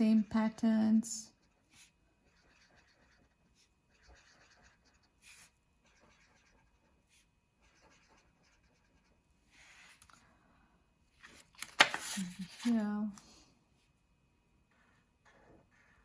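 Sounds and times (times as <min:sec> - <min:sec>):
colouring tool scratching paper: 0:01.3 - 0:10.1, 0:14.7 - 0:16.0
soft handling noises: 0:11.1 - 0:14.0.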